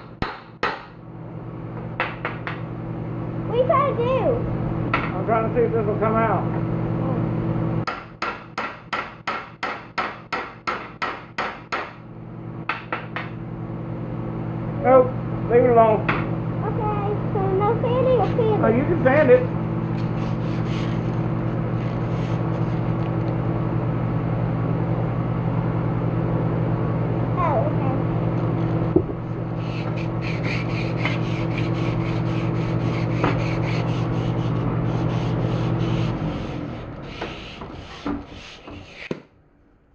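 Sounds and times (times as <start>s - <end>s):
steady motor hum: 0.0s - 39.8s
hammer tapping: 0.1s - 0.9s, 12.7s - 13.4s
hand sanding with sandpaper: 20.0s - 21.2s, 21.8s - 23.0s, 29.6s - 39.2s.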